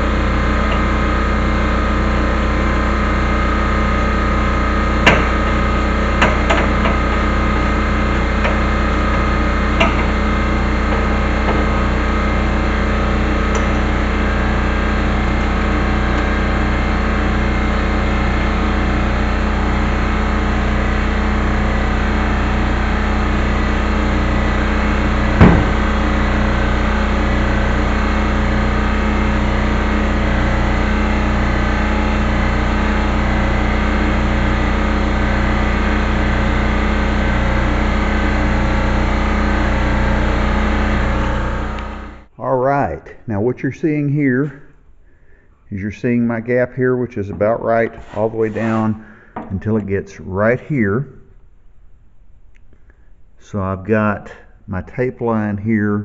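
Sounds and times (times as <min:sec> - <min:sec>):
machine drone with low pulse: 0:00.0 - 0:42.3
sharp knock: 0:25.4 - 0:25.8.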